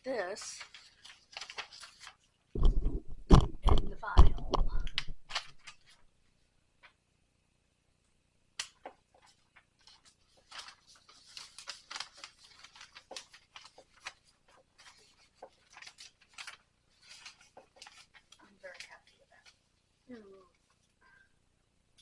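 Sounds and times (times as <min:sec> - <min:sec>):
scratchy rustling: 0:00.2 - 0:04.8, 0:09.2 - 0:19.7.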